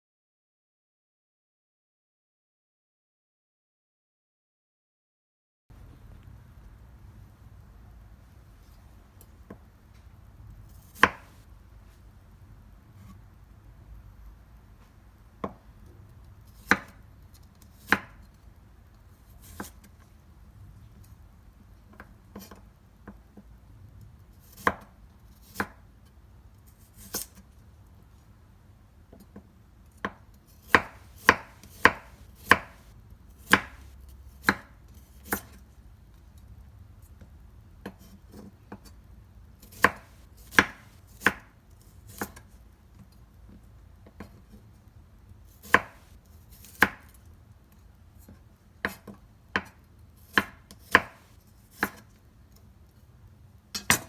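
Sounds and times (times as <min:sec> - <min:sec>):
knife chopping on cutting board: 0:10.9 - 0:11.4, 0:30.7 - 0:35.6, 0:39.7 - 0:41.4, 0:45.6 - 0:47.0, 0:50.3 - 0:52.0.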